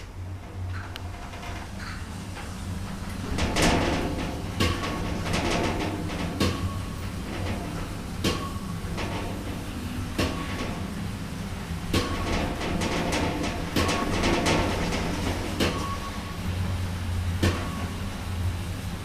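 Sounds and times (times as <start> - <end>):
lift knocks and rattling: 0.0 - 18.1
lift hum: 0.0 - 19.0.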